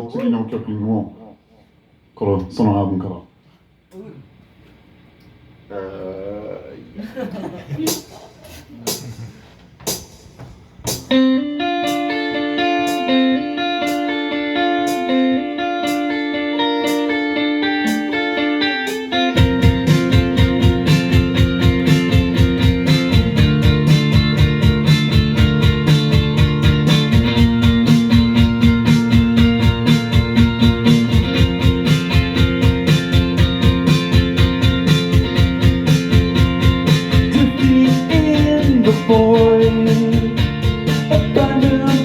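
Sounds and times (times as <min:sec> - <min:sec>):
live rock band playing: 0:10.9 - 0:42.0.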